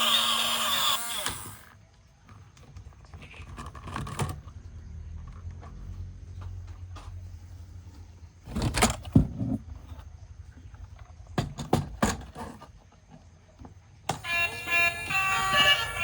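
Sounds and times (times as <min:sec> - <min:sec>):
tune with steady pitched notes: 0:14.2 - 0:16.0.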